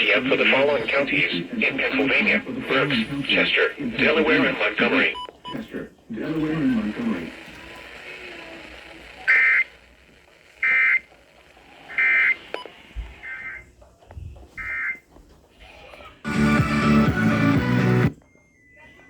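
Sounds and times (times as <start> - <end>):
buzzy digital data bursts: 6.3 - 13.6.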